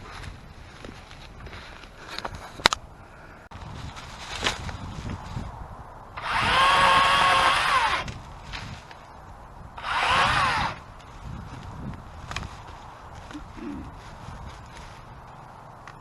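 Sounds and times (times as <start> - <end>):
electric chainsaw motor whining: 6.2 - 8.2, 9.8 - 10.8.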